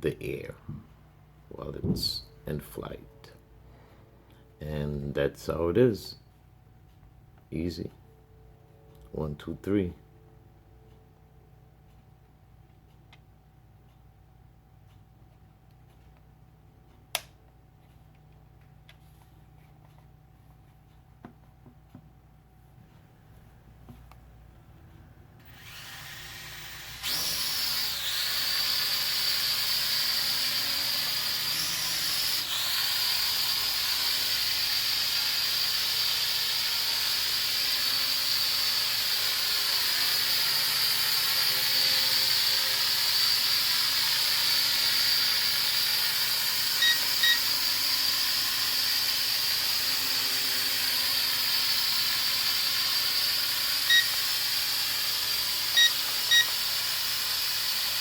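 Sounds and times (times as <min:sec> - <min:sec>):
toy drone motors whining: 0:25.4 - 0:58.0.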